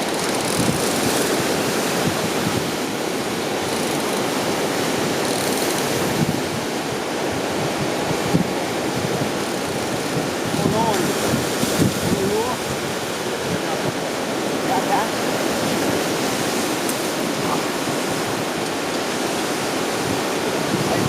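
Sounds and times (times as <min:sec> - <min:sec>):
ocean surf on shore: 0:00.0 - 0:21.0
wind on microphone: 0:00.0 - 0:21.0.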